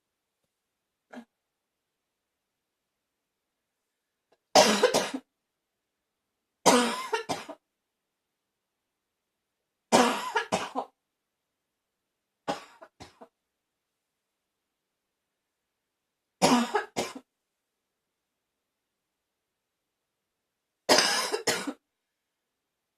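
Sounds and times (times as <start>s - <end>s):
person barking cough: 4.6s - 5.2s, 6.7s - 7.6s, 10.0s - 10.9s, 16.4s - 17.2s, 20.9s - 21.8s.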